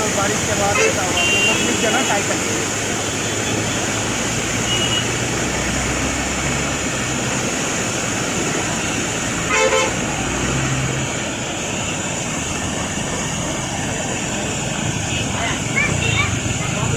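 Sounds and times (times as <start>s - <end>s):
road traffic hum: 0.0s - 16.9s
vehicle horn honking: 0.7s - 2.2s, 4.6s - 5.2s, 9.5s - 10.0s.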